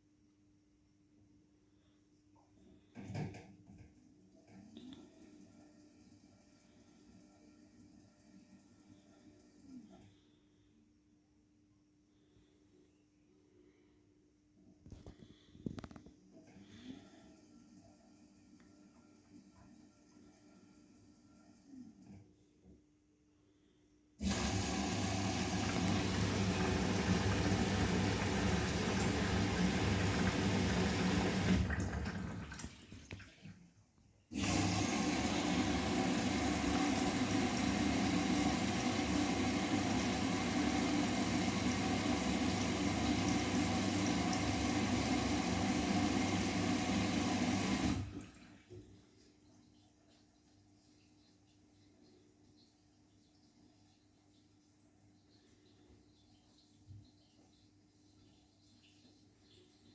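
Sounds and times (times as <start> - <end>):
washing machine filling with water: 4.4 - 9.7, 24.2 - 33.7, 34.3 - 50.8.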